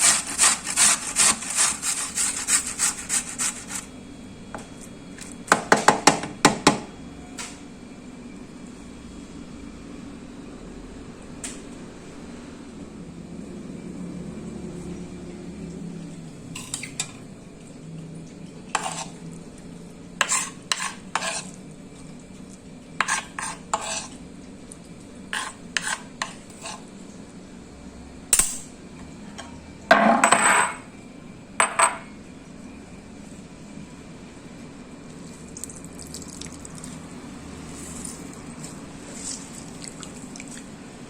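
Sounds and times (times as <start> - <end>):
low steady hum: 6.8 - 41.0
dishes and utensils clinking: 16.6 - 17.2, 29.9 - 30.9
dishes clattering: 29.9 - 30.9, 31.6 - 32.1.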